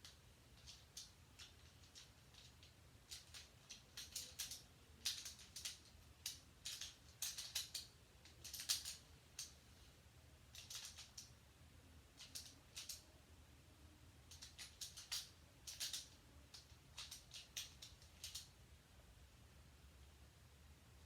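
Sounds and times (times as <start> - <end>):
puzzle cube clicking as twisted: 0.0 - 9.5, 10.6 - 11.3, 12.2 - 13.0, 14.3 - 18.5.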